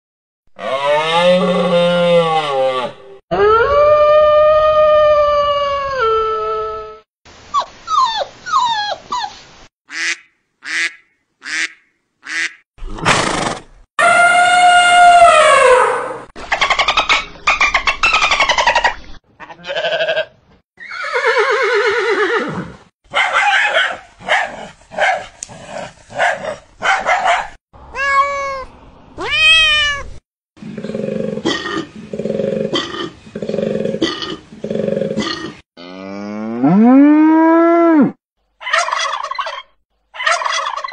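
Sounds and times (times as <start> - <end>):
girl howling like a dog: 3.3 - 7.0, 14.0 - 15.8
girl yipping and barking: 23.1 - 25.2, 26.2 - 30.1.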